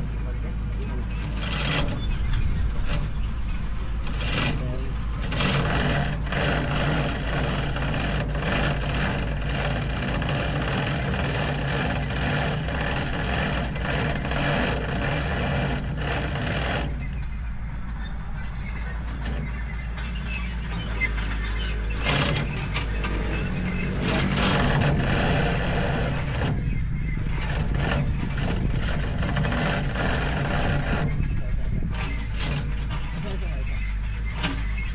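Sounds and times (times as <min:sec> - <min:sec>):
large diesel engine running: 0:00.0 - 0:34.9.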